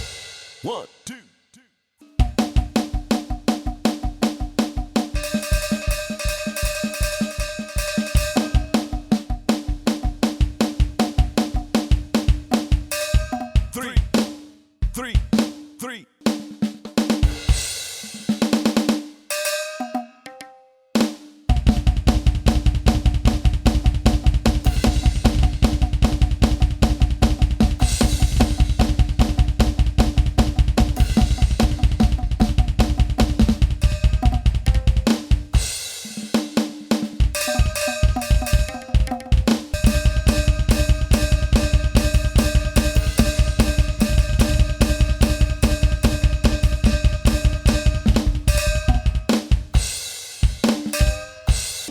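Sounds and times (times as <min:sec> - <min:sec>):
electronic drum hits: 0:05.2 - 0:09.1, 0:21.7 - 0:35.1, 0:37.3 - 0:49.3.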